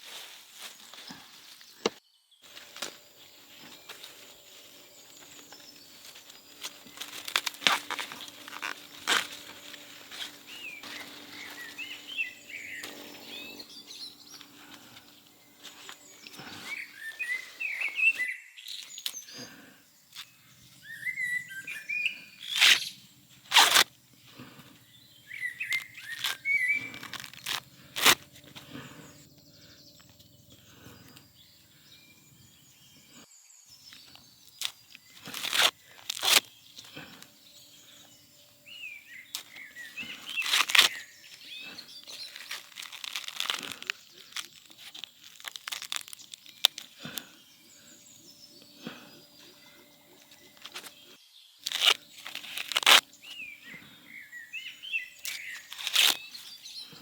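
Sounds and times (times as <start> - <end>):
small birds chirping: 0.6 - 57.0
sharp crackles: 2.5 - 16.8, 22.5 - 24.5, 25.4 - 29.0, 34.5 - 37.3, 39.3 - 47.3, 51.6 - 53.4, 55.2 - 56.6.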